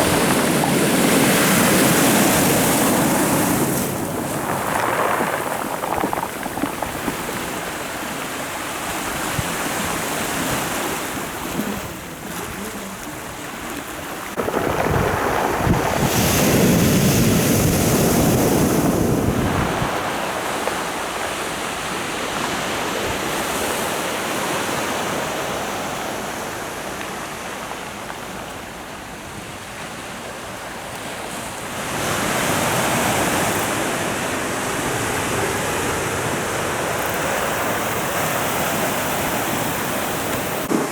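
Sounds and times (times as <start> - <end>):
wind on microphone: 0.0 - 21.5, 32.0 - 40.9
sea waves breaking on shore: 0.0 - 40.9.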